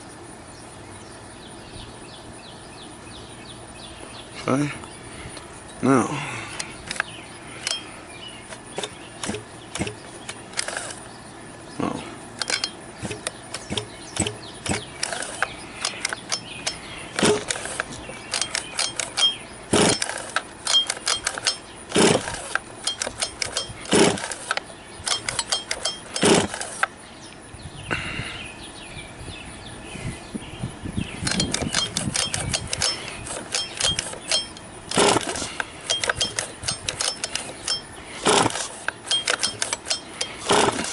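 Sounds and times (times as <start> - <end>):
recoil pull-starter pulls: 6.6 - 7.8, 8.5 - 11.1, 12.4 - 27.0, 31.2 - 40.9
engine turning over: 8.5 - 11.2, 12.4 - 27.0, 31.2 - 40.9.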